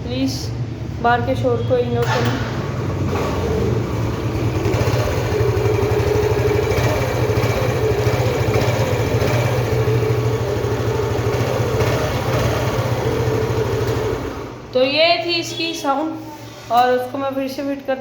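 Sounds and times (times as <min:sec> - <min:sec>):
scooter engine idling: 0:02.0 - 0:15.1.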